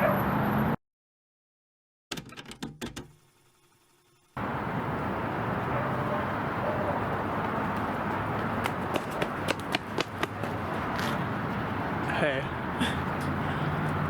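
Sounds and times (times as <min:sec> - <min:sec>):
outdoor background noise: 0:04.4 - 0:14.0.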